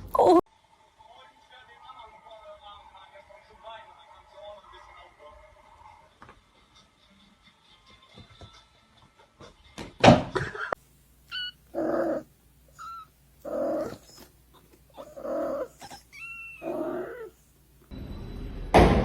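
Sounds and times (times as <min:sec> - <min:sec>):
pet animal calling: 0:11.3 - 0:17.5.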